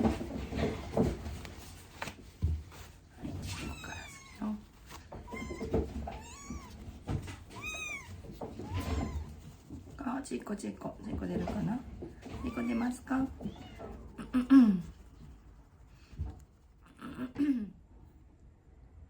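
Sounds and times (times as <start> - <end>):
soft knocks: 0.0 - 10.0
kitten mewing: 5.3 - 6.8, 7.5 - 9.3, 12.3 - 15.0.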